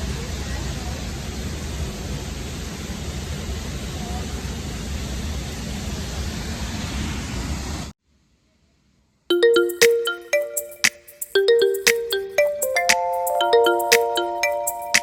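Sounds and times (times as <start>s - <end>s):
chiming music: 9.3s - 15.0s.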